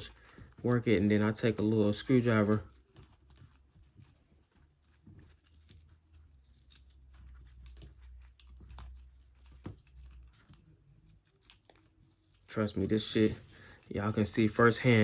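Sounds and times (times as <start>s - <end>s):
screwdriver clicking and scraping: 2.4s - 13.0s.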